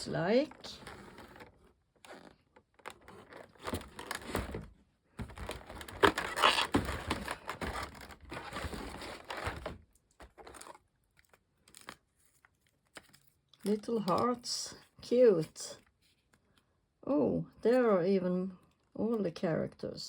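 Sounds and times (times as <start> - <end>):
packaging crinkling and rustling: 0.3 - 14.2.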